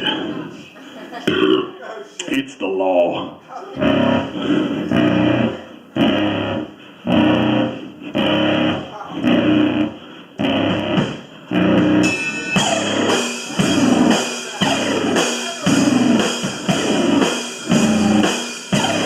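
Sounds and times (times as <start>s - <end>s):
drum kit: 3.8s - 19.0s
electric guitar chords: 6.0s - 19.0s
live rock band playing: 10.4s - 19.0s.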